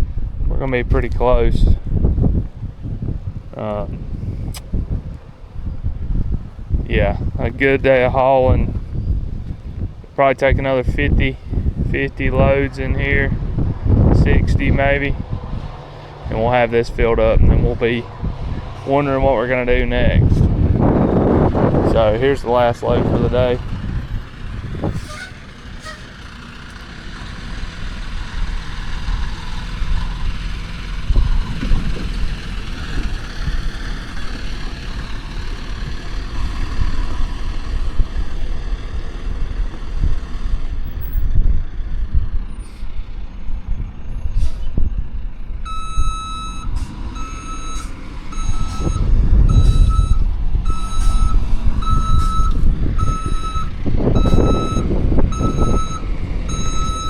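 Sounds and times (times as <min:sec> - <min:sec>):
diesel earthmoving machinery running: 0:00.0 - 0:57.0
backup alarm beeping: 0:45.7 - 0:57.0.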